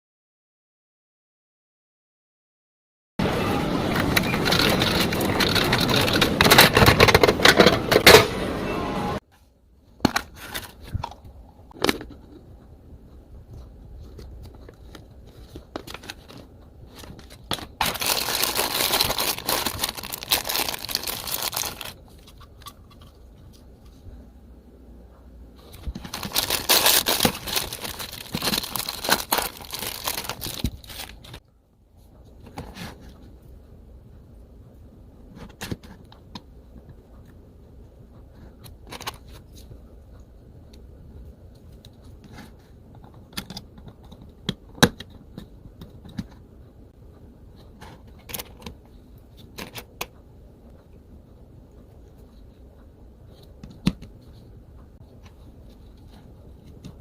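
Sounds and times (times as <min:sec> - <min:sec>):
plastic wrapping crinkling and tearing: 0:04.4 - 0:07.0, 0:17.0 - 0:22.3, 0:25.9 - 0:31.4.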